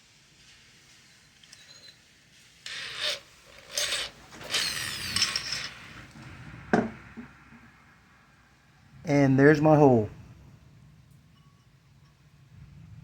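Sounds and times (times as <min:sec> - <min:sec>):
ceramic pot scraping and rubbing: 0:02.7 - 0:06.1.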